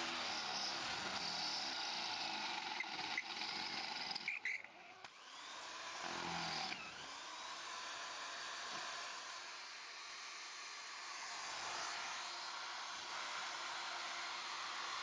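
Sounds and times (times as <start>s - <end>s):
electric power tool running: 0.0s - 15.0s.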